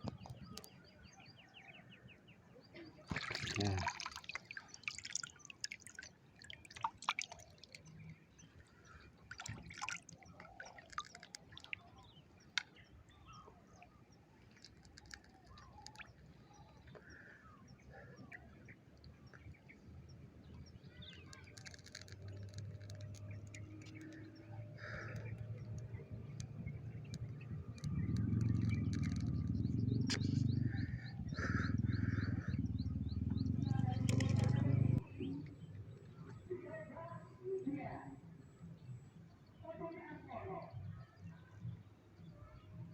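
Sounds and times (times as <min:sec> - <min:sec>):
water dripping and trickling: 0:03.1 - 0:12.8, 0:14.4 - 0:17.1, 0:20.9 - 0:30.4, 0:33.2 - 0:35.0
bird chirps: 0:10.2 - 0:36.5.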